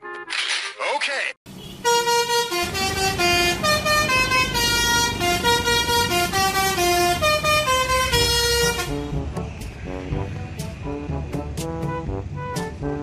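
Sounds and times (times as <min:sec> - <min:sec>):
bus musical horn melody: 0:01.5 - 0:13.0
low engine rumble: 0:02.5 - 0:13.0.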